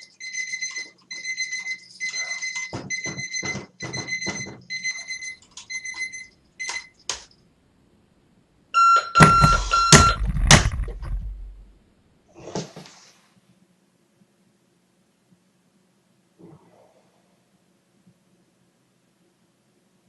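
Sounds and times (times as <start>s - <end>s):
alarm beep: 0.0s - 6.9s, 8.8s - 10.2s
alarm clock beeping: 0.0s - 6.9s, 8.8s - 10.2s
loud thuds: 9.2s - 11.8s.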